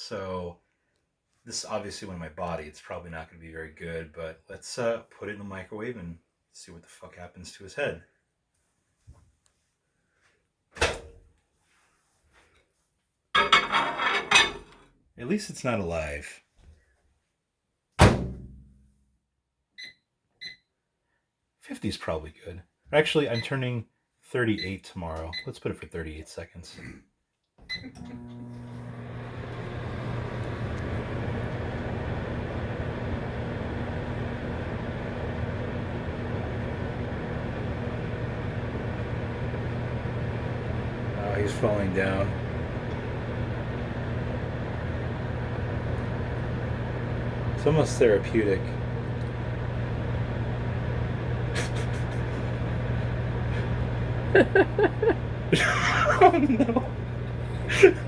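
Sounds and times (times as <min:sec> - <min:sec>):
microwave humming: 0:27.7 - 0:58.0.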